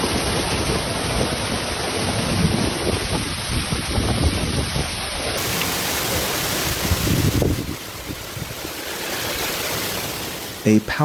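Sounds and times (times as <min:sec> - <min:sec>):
wind gusts buffeting microphone: 0:00.0 - 0:10.7
heavy rain pouring: 0:05.1 - 0:11.0.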